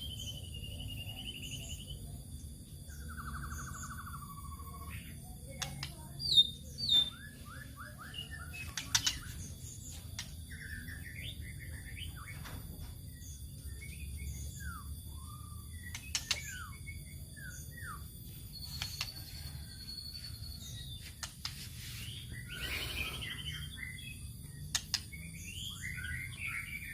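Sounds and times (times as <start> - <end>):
bird harsh rattling calls: 22.5 - 23.8
bird whistling varied notes: 22.5 - 23.8.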